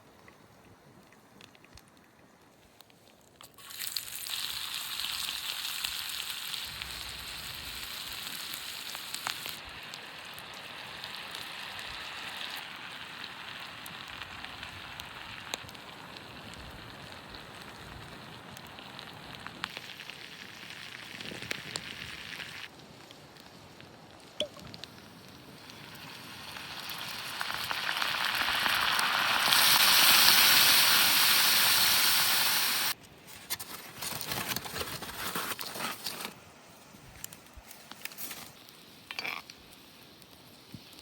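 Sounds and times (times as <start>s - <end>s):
food sizzling in a pan: 3.6s - 15.6s, 19.6s - 22.7s, 25.4s - 33.0s.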